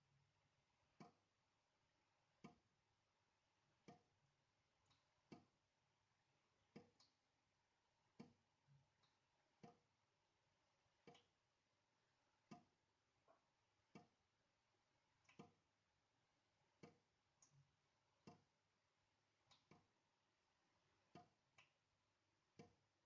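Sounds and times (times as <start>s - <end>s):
water dripping into sink: 0.9s - 1.3s, 2.3s - 2.7s, 3.8s - 4.2s, 4.8s - 5.6s, 6.6s - 7.2s, 8.0s - 9.9s, 10.9s - 11.4s, 12.4s - 14.2s, 15.2s - 15.7s, 16.7s - 18.5s, 19.4s - 20.0s, 20.9s - 22.9s.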